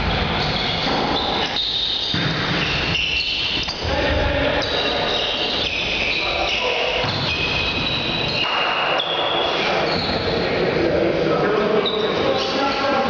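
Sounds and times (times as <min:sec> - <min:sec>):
volleyball struck and bouncing: 0:00.0 - 0:03.9
indoor hall noise: 0:00.0 - 0:13.0
shoe squeaks: 0:00.2 - 0:03.9, 0:04.5 - 0:10.6, 0:11.8 - 0:12.7.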